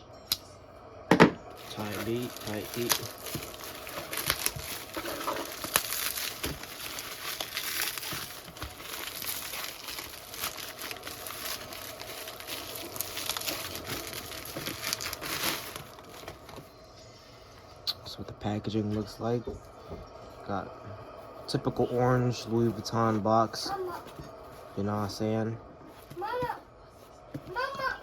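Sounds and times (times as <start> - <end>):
packaging crinkling and rustling: 1.6 - 16.8.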